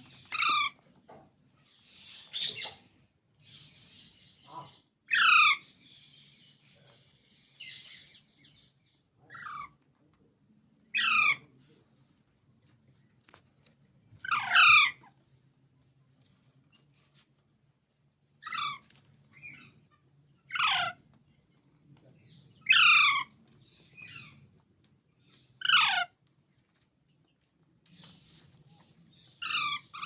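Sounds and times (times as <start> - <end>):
parrot screeching calls: 5.1 - 5.7, 11.0 - 11.4, 14.2 - 15.0, 20.5 - 21.0, 22.7 - 23.3, 25.6 - 26.1, 29.4 - 30.0.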